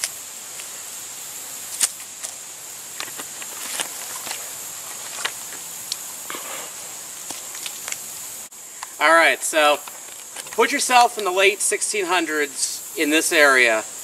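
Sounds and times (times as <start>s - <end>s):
high insect drone: 0.0s - 14.0s
small clicks and rustles: 3.0s - 6.0s, 7.2s - 8.0s.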